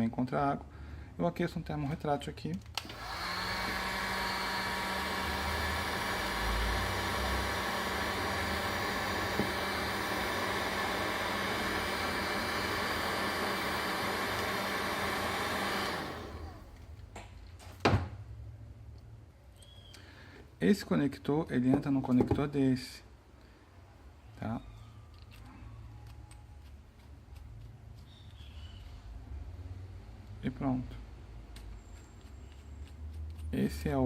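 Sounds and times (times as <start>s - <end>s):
hot-air blower humming: 2.8s - 16.9s.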